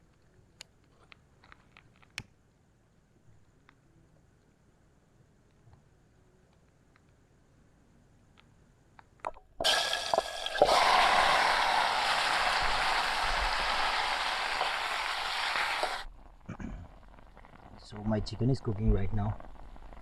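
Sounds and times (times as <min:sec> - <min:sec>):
chicken sizzling in hot oil: 0:09.6 - 0:17.9.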